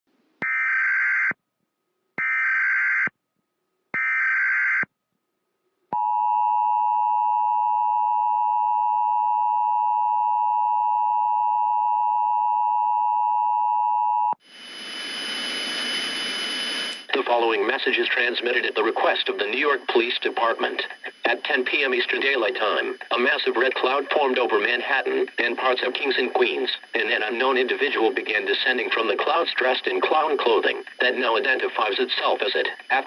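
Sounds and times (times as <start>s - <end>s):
digital data bursts: 14.6s - 33.0s.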